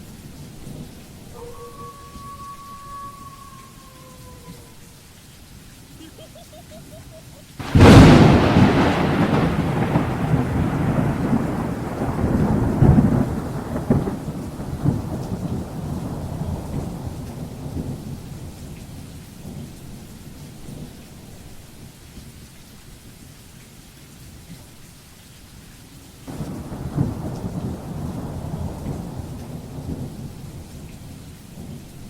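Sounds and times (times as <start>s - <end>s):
rain hiss: 0.0s - 32.0s
thunder clap and rumble: 7.6s - 19.7s, 26.3s - 32.0s.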